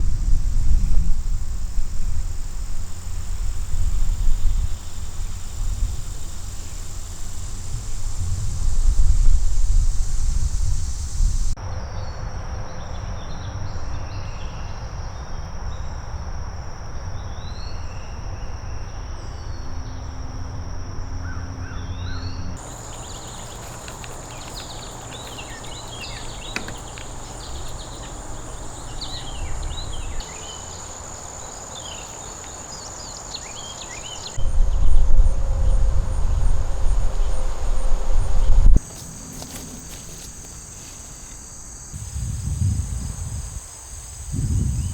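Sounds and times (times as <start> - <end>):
insects trilling: 0.0 - 11.6, 16.5 - 44.9
wind rumble on microphone: 0.0 - 17.7, 22.5 - 30.2, 34.0 - 38.8, 41.9 - 44.9
bird chirps: 22.0 - 35.0.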